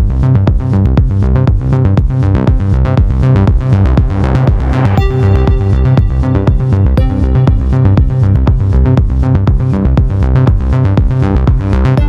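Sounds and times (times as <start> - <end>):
electronic dance music: 3.2 - 9.6.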